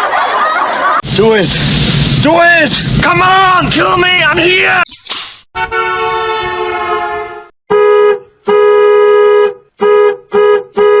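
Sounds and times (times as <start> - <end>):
two-note horn blasts: 5.6 - 11.0.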